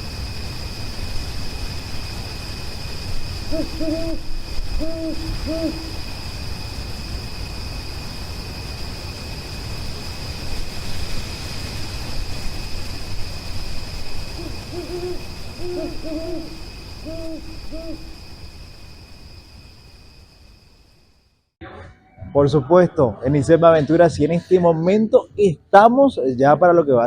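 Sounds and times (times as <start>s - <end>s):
owl hooting: 3.1s - 6.2s, 14.2s - 18.3s.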